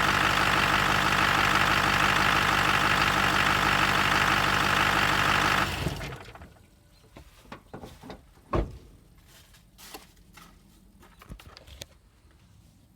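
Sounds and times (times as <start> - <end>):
truck engine switching off: 0.0 - 6.6.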